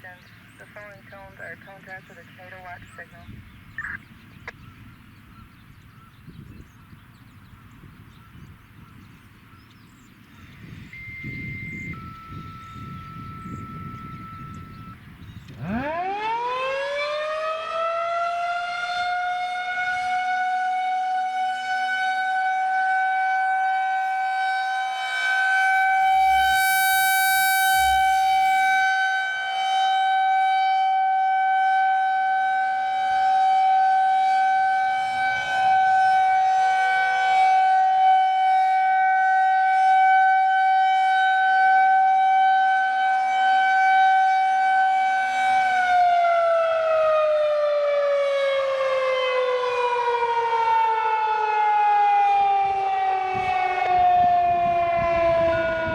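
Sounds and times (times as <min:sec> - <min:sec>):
electromechanical siren: 0:10.6 - 0:55.9.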